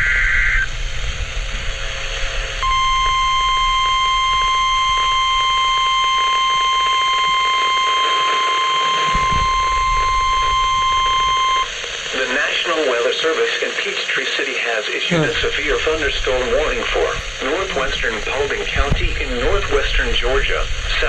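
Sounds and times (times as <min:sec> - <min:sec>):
radio hiss: 0:00.0 - 0:21.0
digital header tones: 0:02.6 - 0:11.7
steady warning alarm tone: 0:02.6 - 0:12.4.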